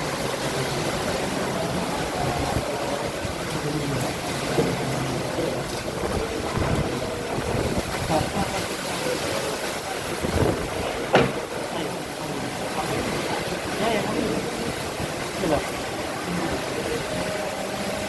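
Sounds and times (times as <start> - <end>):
heavy rain: 0.0 - 18.0
wind buffeting microphone: 5.2 - 11.7.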